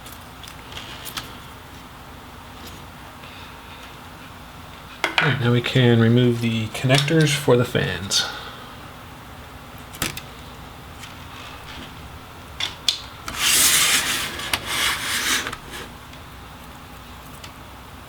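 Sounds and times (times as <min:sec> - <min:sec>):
tool scraping and rubbing: 0:13.2 - 0:16.0.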